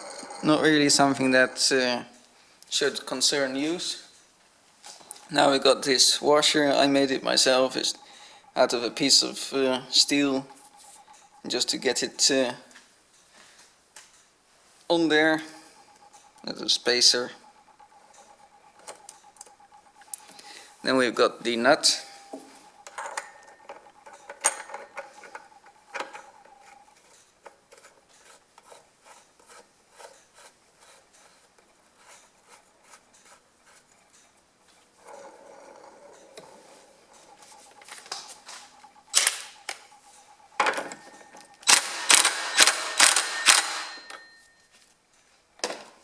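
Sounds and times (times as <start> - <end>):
rapid sharp clicks: 15.3 - 27.2, 37.1 - 44.0
hand tools clicking on metal: 18.2 - 34.4, 37.2 - 44.4.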